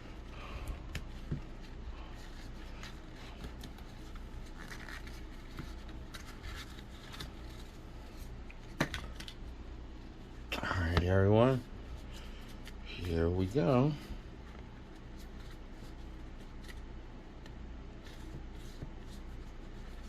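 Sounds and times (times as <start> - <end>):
packaging rustling and scratching: 0.8 - 8.4.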